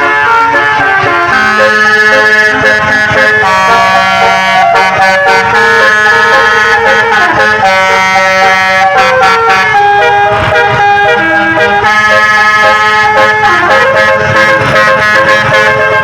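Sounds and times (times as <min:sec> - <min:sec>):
multi-tone bus horn playing a tune: 0:00.0 - 0:16.0.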